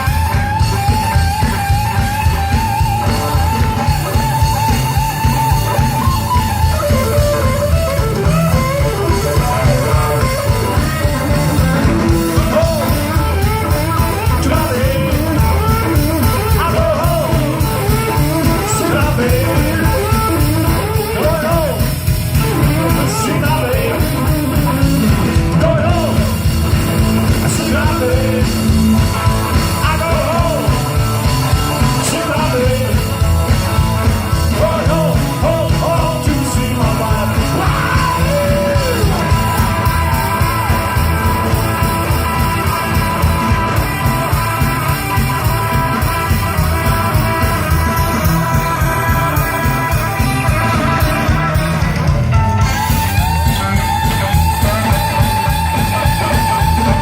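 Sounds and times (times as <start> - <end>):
wavering melody line: 0.0 - 25.2
guitar: 0.0 - 57.0
live rock band playing: 0.0 - 57.0
steady drum beat: 0.0 - 57.0.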